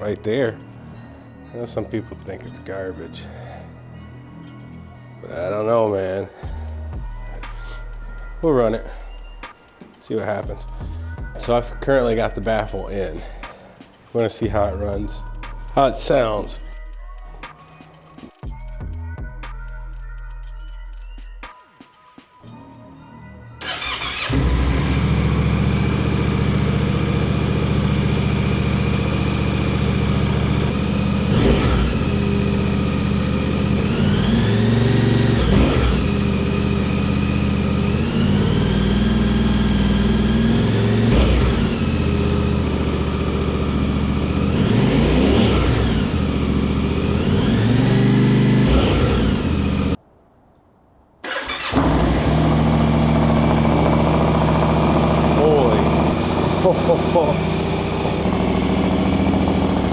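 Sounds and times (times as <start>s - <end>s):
motorcycle engine idling: 6.4s - 9.5s, 10.4s - 13.5s, 14.4s - 17.3s, 23.6s - 50.0s, 51.4s - 59.9s
engine starting: 23.6s - 25.5s, 51.2s - 56.2s
quick throttle blips: 23.6s - 50.0s, 51.2s - 59.9s.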